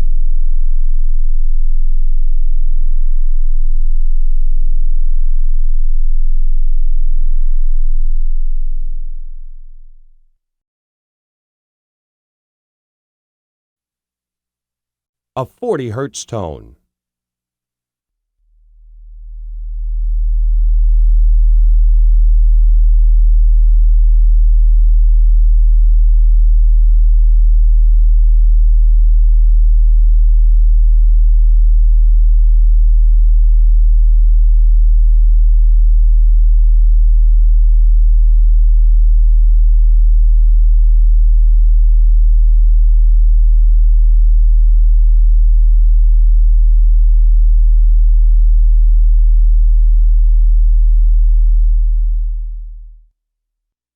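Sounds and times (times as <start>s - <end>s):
deep sine-wave test tone: 0.0s - 10.3s, 18.5s - 53.0s.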